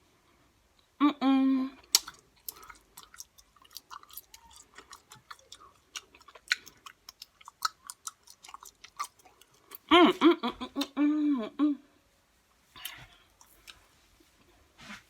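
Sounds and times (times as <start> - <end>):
chewing and lip-smacking: 1.8 - 9.9, 12.8 - 13.9.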